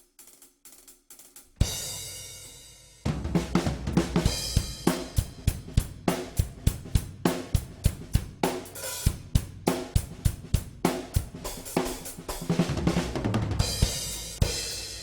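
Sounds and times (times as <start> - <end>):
drum kit groove: 0.0 - 15.0.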